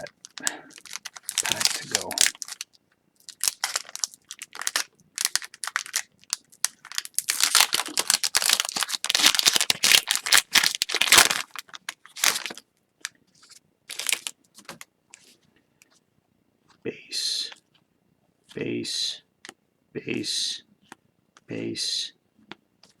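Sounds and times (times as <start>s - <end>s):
foil wrapper crinkling and tearing: 0.0s - 14.8s.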